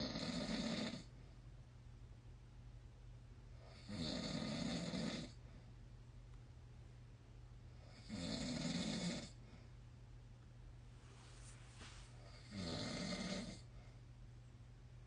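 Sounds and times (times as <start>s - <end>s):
man snoring: 0.0s - 1.1s, 3.7s - 5.4s, 7.9s - 9.4s, 12.3s - 13.6s.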